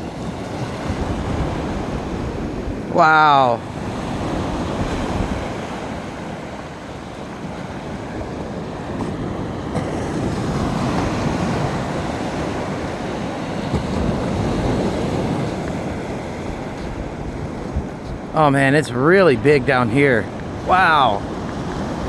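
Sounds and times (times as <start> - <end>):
surf washing onto beach: 0.0 - 22.0
wind rumble on microphone: 0.0 - 22.0.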